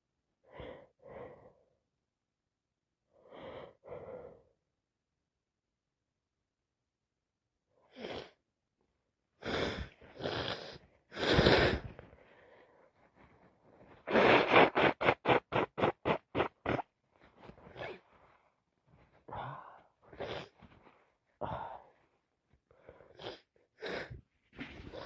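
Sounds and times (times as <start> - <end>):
loud nasal bursts: 9.4 - 11.9, 14.0 - 16.9
person sniffing: 9.4 - 12.6, 13.9 - 18.4, 19.4 - 20.8, 22.9 - 24.2.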